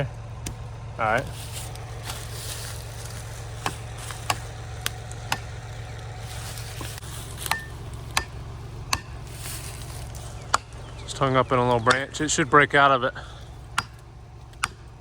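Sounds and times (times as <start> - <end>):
low engine hum: 0.0 - 15.0
hammer striking wedge: 5.3 - 5.5, 7.4 - 9.2, 13.8 - 14.9.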